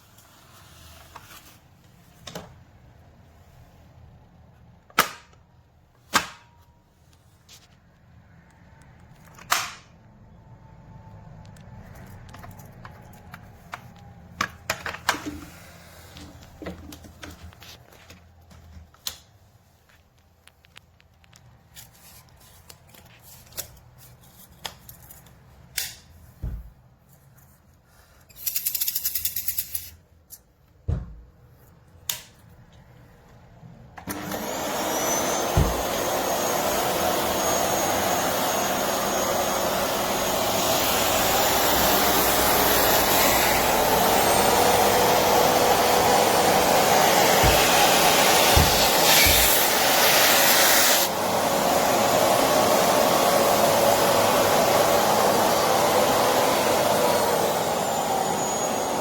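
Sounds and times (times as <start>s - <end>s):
vacuum cleaner running: 13.5s - 17.8s, 34.0s - 59.0s.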